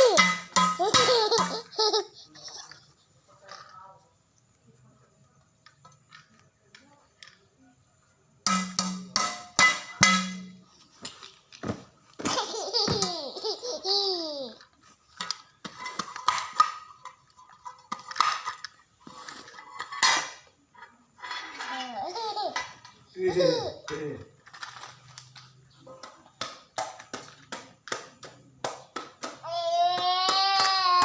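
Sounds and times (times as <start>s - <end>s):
babies laughing and giggling: 0.0s - 3.0s, 12.2s - 14.8s, 21.6s - 24.0s.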